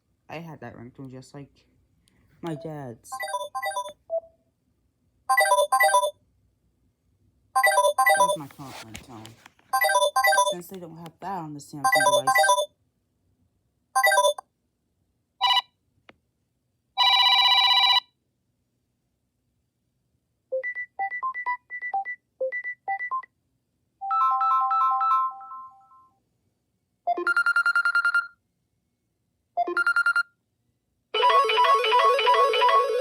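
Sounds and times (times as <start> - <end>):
electronic ringtone melodies: 3.1 - 3.9, 5.3 - 6.1, 7.6 - 8.4, 9.8 - 10.6, 11.8 - 12.7, 14.0 - 14.4, 24.1 - 26.0, 31.2 - 33.0.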